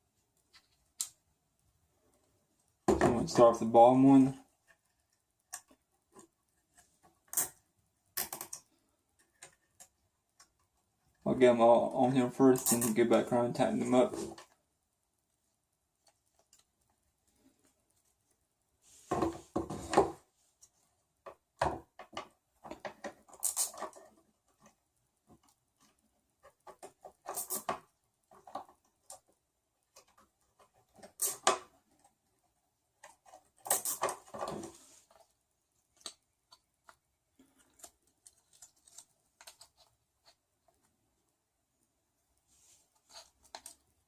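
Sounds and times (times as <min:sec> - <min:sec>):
plastic parts clicking and knocking: 0:04.6 - 0:11.2, 0:21.2 - 0:32.3, 0:32.9 - 0:35.3, 0:35.9 - 0:41.0, 0:43.0 - 0:44.0.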